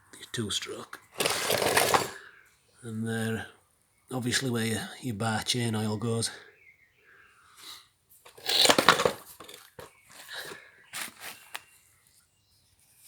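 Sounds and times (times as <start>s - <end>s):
chainsaw handling scrapes and knocks: 1.1s - 2.2s, 8.2s - 11.7s.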